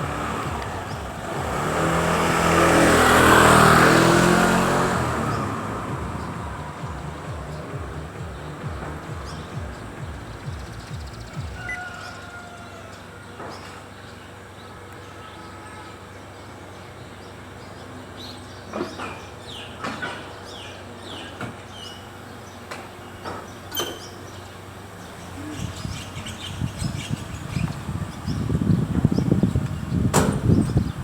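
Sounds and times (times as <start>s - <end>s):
brake squeaking: 0.0s - 12.0s, 21.1s - 31.0s.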